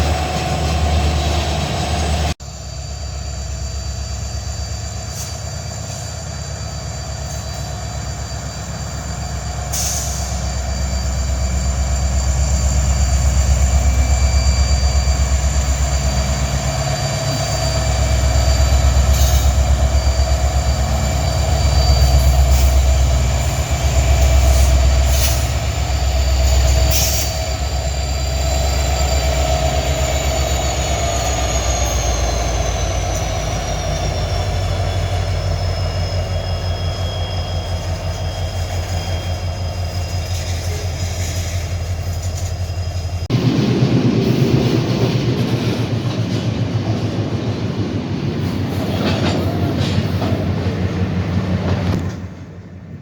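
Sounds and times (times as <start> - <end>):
high-pitched wheel squeal: 2.7 - 43.3
freight cars rumbling past: 39.9 - 53.0.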